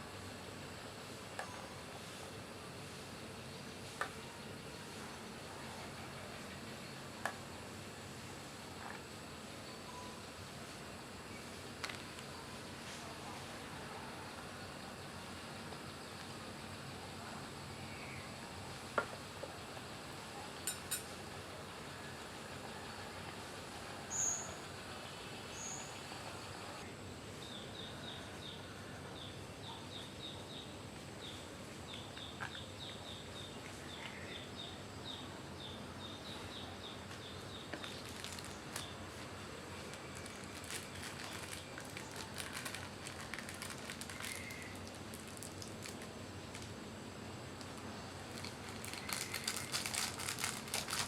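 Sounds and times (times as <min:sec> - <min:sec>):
outdoor background hiss: 0:00.0 - 0:51.0
clicks and rustles: 0:47.6 - 0:51.0.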